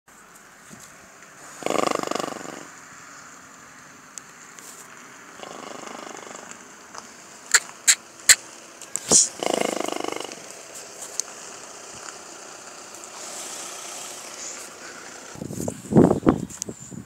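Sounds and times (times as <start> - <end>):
pony snorting: 1.4 - 2.7, 5.4 - 6.6, 9.0 - 10.4.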